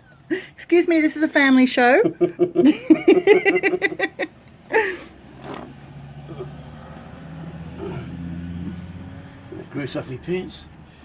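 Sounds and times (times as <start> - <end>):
laughter: 1.9 - 5.1
car engine humming: 2.0 - 11.0.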